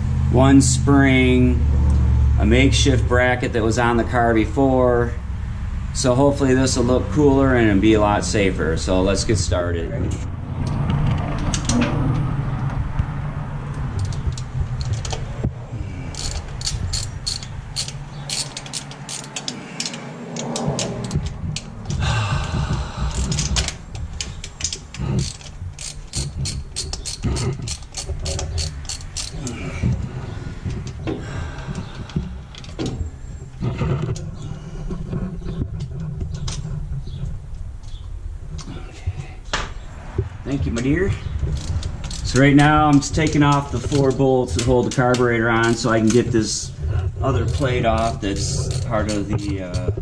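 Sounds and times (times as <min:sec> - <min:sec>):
steady low hum: 0:00.0 - 0:50.0
ratchet wrench clicking: 0:14.0 - 0:15.2, 0:16.1 - 0:22.0, 0:23.0 - 0:29.5, 0:41.4 - 0:46.3, 0:47.4 - 0:50.0.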